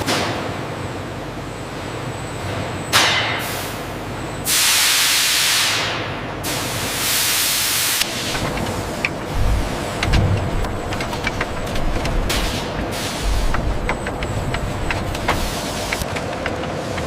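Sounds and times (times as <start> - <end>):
machinery hissing bursts: 4.5 - 16.0
steady machine noise: 8.0 - 17.0.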